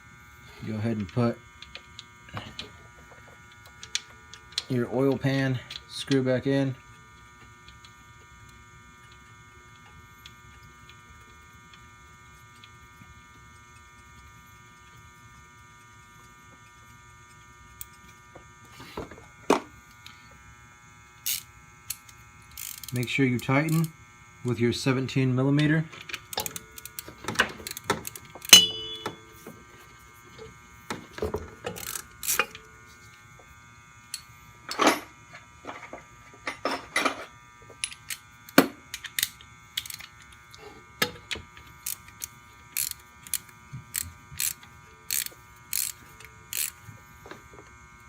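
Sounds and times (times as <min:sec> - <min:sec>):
faint high hum: 0:00.0 - 0:48.0
wrench clicking: 0:21.2 - 0:21.4, 0:22.0 - 0:23.0, 0:26.1 - 0:29.1, 0:31.7 - 0:32.6, 0:37.8 - 0:40.1, 0:41.8 - 0:46.8.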